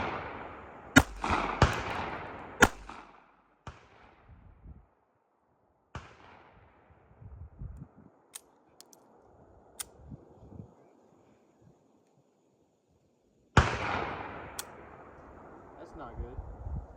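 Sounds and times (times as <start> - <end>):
pistol shots echoing: 0.0 - 4.0, 13.6 - 15.1.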